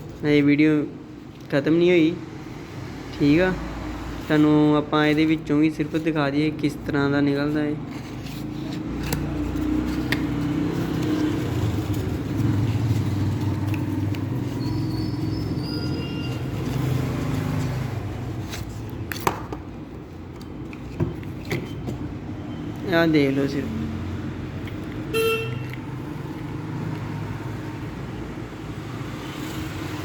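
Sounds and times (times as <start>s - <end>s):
road traffic: 0.0s - 30.0s.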